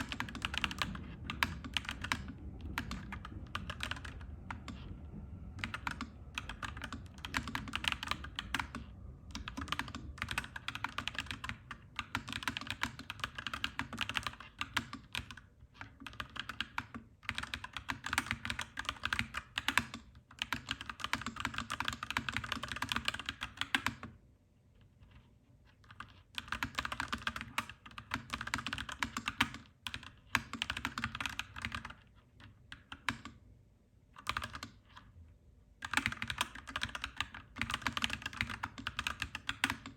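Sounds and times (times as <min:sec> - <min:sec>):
mechanical keyboard typing: 0:00.0 - 0:05.0, 0:05.6 - 0:24.1, 0:25.8 - 0:33.4, 0:34.2 - 0:35.1, 0:35.8 - 0:39.9
low steady rumble: 0:00.0 - 0:13.9.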